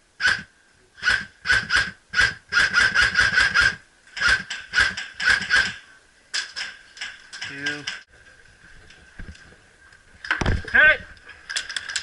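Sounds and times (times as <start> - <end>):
airsoft rifle shots: 0.2 - 5.8.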